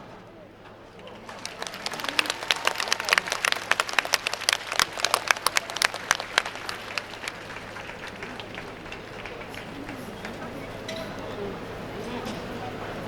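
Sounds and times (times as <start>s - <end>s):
audience applauding: 0.8s - 13.0s.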